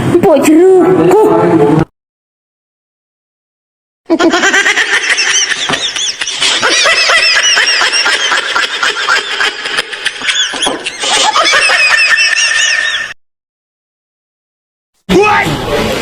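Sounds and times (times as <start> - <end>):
crowd laughing: 4.1 - 13.2.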